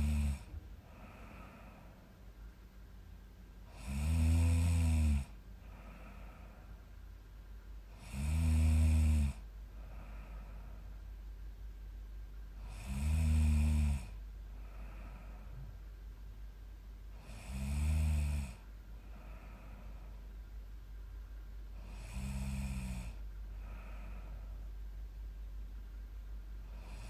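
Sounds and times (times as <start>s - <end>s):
woman snoring: 0.0s - 1.9s, 3.7s - 6.6s, 7.9s - 10.6s, 12.6s - 15.7s, 17.1s - 20.0s, 21.8s - 24.4s, 26.6s - 27.0s
soft breathing: 0.0s - 2.9s, 5.2s - 8.2s, 9.2s - 11.5s, 13.7s - 16.3s, 18.3s - 27.0s.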